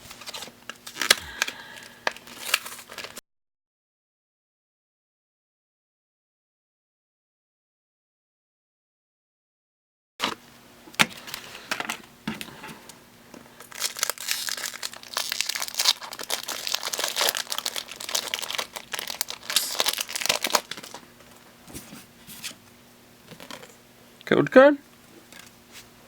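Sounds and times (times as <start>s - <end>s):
foil wrapper crinkling: 0.0s - 3.2s, 13.6s - 21.4s.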